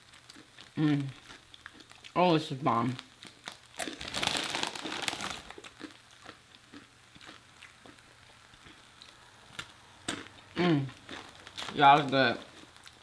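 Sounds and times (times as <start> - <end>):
crunching chips: 2.8 - 13.0.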